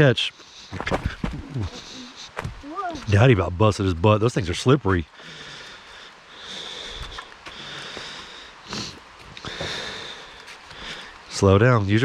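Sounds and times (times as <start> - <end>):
person breathing heavily: 0.4 - 3.0, 5.1 - 11.3.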